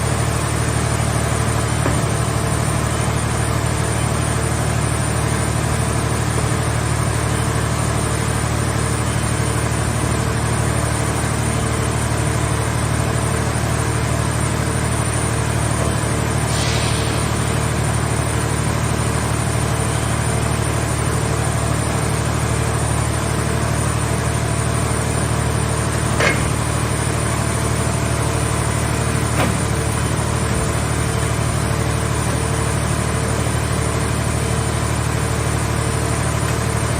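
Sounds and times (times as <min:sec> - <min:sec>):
machine power unit humming: 0:00.0 - 0:36.9
brief hiss: 0:16.4 - 0:18.1.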